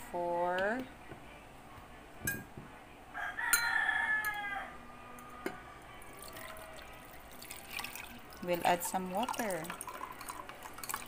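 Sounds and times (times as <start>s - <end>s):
rooster crowing: 3.2s - 6.0s.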